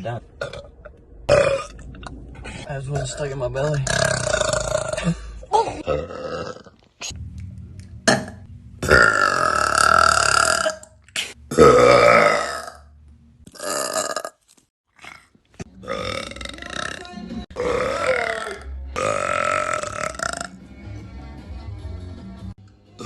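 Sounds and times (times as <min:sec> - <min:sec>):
woman burping: 0:04.0 - 0:06.8, 0:15.8 - 0:20.5.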